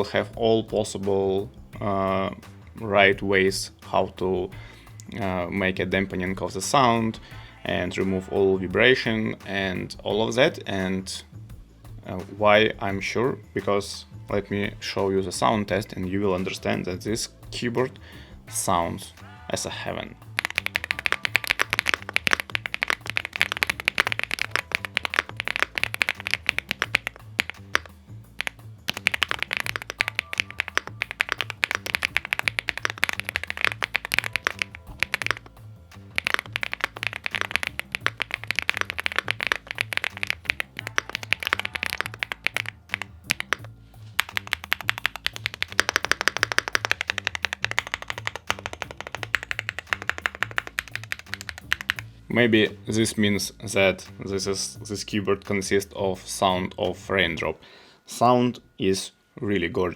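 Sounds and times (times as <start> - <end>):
mechanical keyboard typing: 20.4 - 35.5, 36.1 - 52.0.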